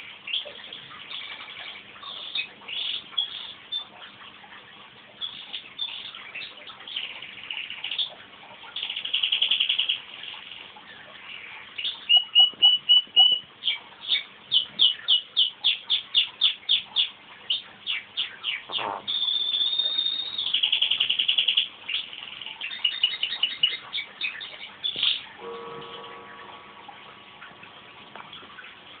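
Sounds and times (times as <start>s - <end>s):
canary singing: 11.8s - 26.6s.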